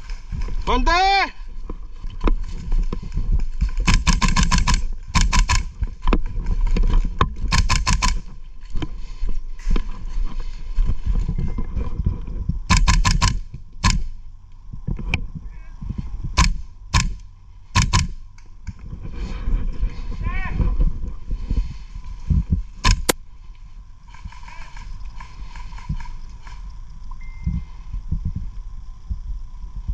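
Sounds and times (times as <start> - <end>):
low rumbling handling noise: 0.0 - 29.9
airsoft rifle firing: 3.8 - 5.8, 7.5 - 8.3, 12.7 - 14.2, 16.4 - 18.2, 22.8 - 23.2.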